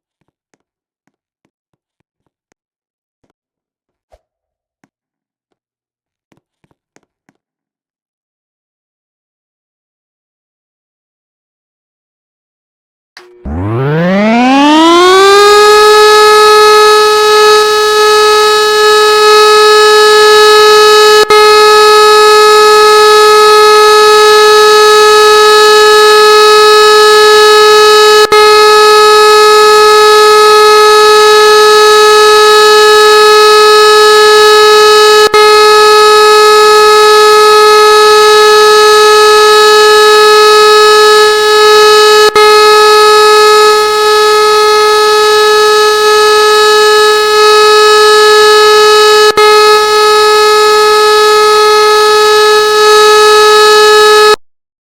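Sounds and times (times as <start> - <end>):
siren steady tone: 13.2 - 54.4.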